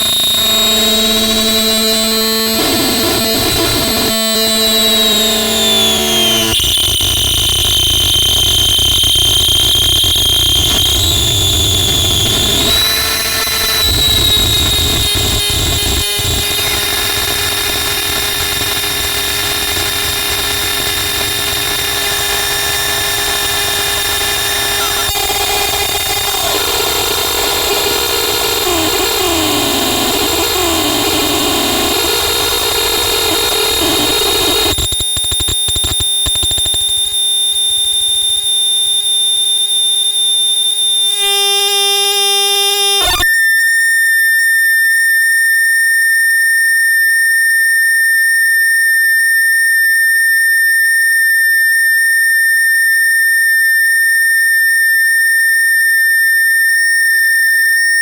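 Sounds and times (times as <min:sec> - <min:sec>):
harsh electronic noise: 0:00.0 - 0:38.1, 0:41.2 - 0:43.3
shrill whining tones: 0:00.0 - 0:47.6.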